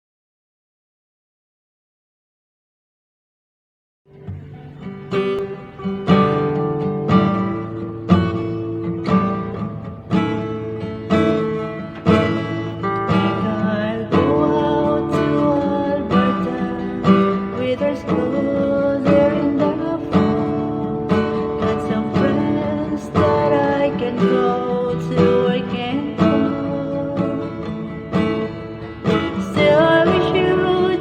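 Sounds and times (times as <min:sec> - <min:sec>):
acoustic guitar strumming: 0:04.1 - 0:31.0
person singing: 0:12.8 - 0:31.0.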